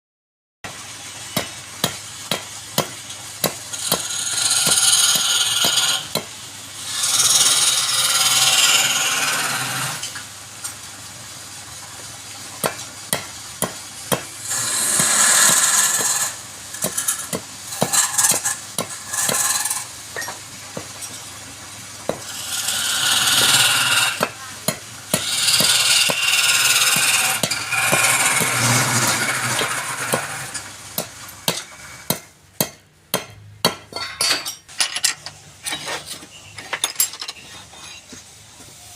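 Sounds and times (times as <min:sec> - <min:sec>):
tool scraping wood: 0:03.4 - 0:06.2, 0:14.4 - 0:19.9, 0:22.1 - 0:24.4, 0:25.1 - 0:30.7.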